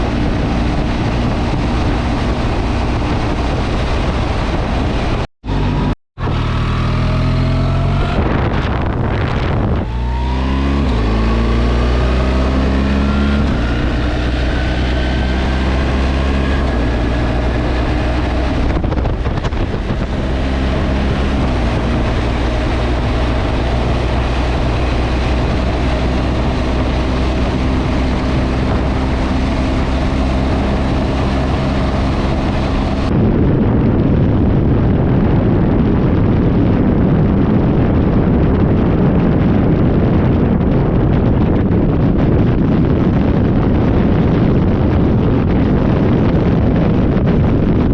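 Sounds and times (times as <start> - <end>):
motorcycle engine revving: 0.0 - 33.2
wind rushing over microphone: 0.0 - 47.9.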